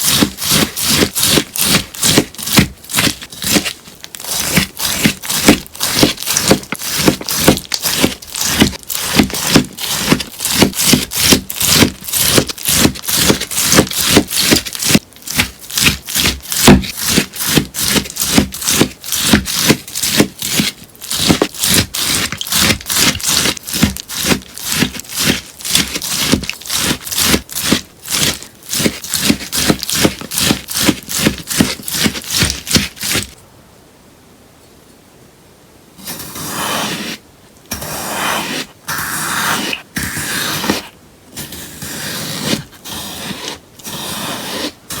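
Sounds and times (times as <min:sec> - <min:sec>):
scissors snipping sponge: 0:00.0 - 0:33.4.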